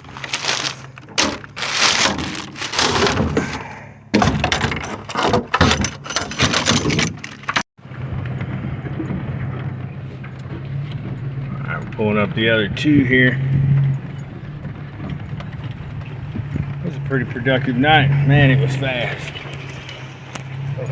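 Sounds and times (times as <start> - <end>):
gear rustling and clattering: 0.0 - 3.6, 4.2 - 7.6
truck engine humming: 0.0 - 4.1, 7.8 - 20.9.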